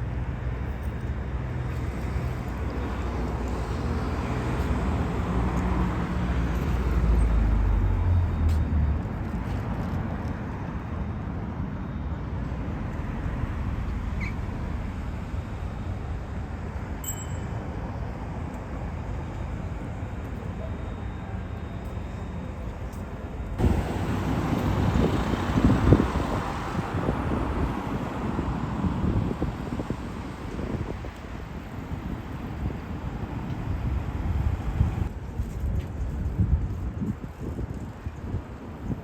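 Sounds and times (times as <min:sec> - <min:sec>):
road traffic rumble: 0:00.0 - 0:39.0
wind buffeting microphone: 0:23.6 - 0:39.0.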